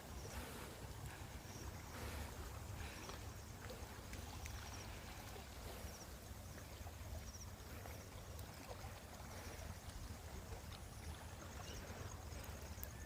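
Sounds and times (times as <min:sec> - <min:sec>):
low steady river rumble: 0:00.0 - 0:13.0.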